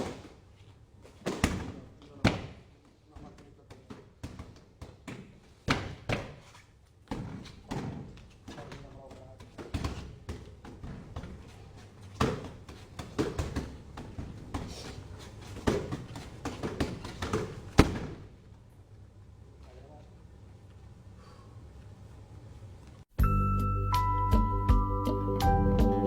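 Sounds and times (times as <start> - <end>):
strikes and blocks slapping: 3.7 - 6.4, 15.6 - 18.3
people talking: 8.5 - 9.5.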